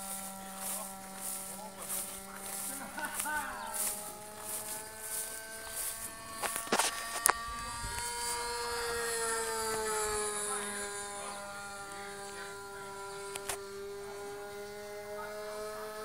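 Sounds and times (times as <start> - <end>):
model airplane motor drone: 0.0 - 16.0.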